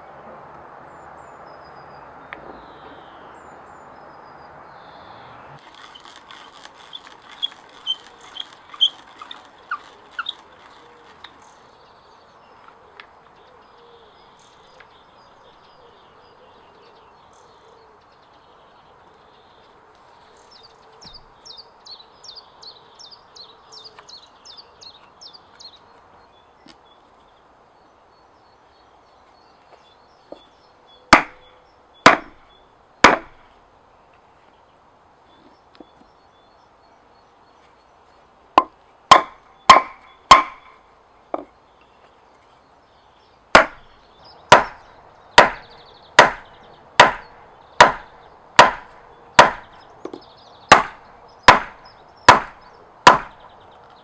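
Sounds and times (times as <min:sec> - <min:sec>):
heavy chopping blows on wood: 0:31.2 - 0:31.4, 0:32.1 - 0:32.4, 0:33.0 - 0:33.4, 0:38.6 - 0:40.7, 0:43.5 - 0:43.9, 0:44.5 - 0:49.8, 0:50.7 - 0:53.4.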